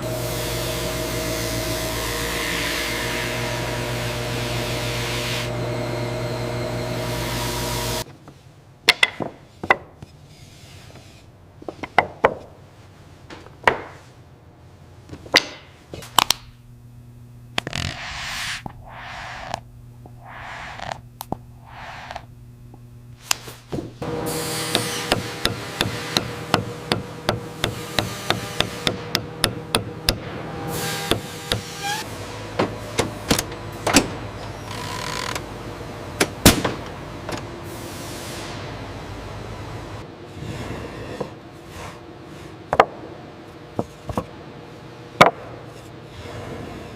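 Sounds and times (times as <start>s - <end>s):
woodworking machine running: 0.0s - 8.0s, 24.0s - 37.8s
hiss: 20.2s - 21.0s, 21.7s - 22.2s.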